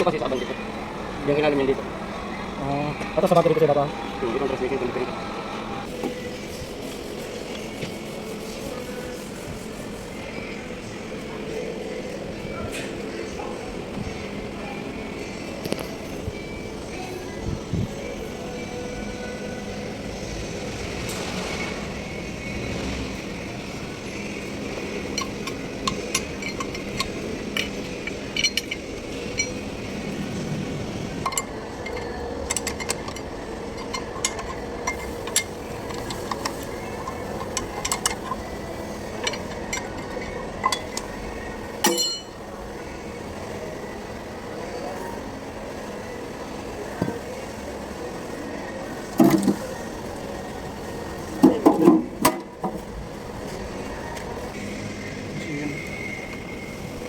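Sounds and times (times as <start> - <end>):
steady background hum: 0.0 - 57.0
hand tools clinking on metal: 25.0 - 29.7, 31.2 - 41.2, 41.8 - 42.4.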